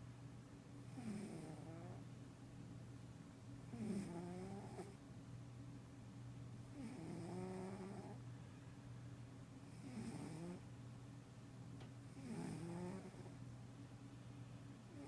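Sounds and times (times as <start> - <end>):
cat snoring faintly: 0.9 - 2.0, 3.7 - 5.0, 6.7 - 8.2, 9.6 - 10.7, 12.1 - 13.4.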